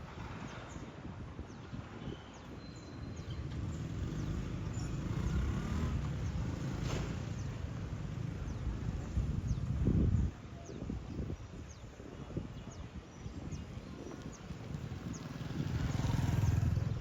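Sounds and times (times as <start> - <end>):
road vehicle passing: 3.4 - 9.1, 14.6 - 17.0.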